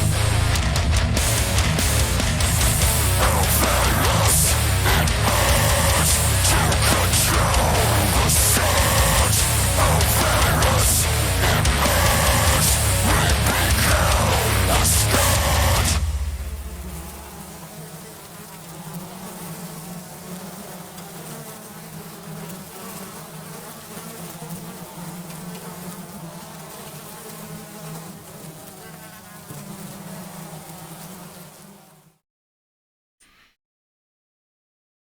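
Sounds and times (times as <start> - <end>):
death metal music: 0.0 - 17.5
flies buzzing: 1.1 - 32.2.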